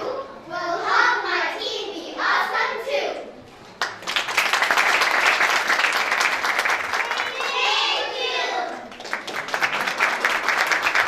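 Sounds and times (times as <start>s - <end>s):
audience clapping: 3.8s - 8.1s, 8.7s - 11.0s.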